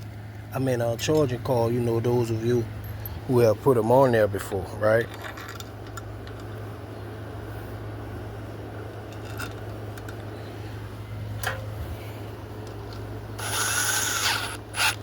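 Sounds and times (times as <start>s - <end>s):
steady low hum: 0.0s - 15.0s
cordless drill whining: 13.4s - 15.0s.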